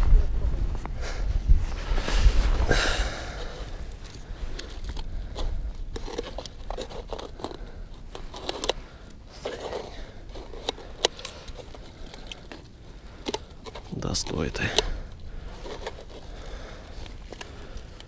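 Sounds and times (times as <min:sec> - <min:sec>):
fishing gear clicks and scrapes: 0:03.4 - 0:18.0.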